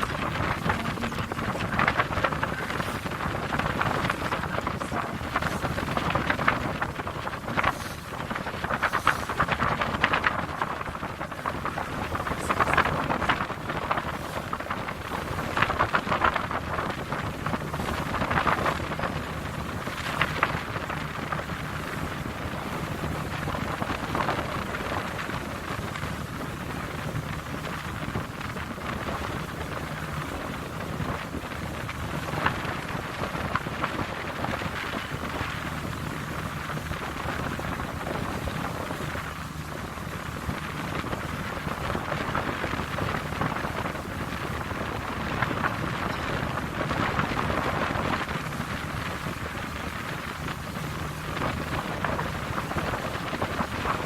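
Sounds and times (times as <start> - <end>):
boat engine hum: 0.0 - 54.0
wind on microphone: 0.0 - 54.0.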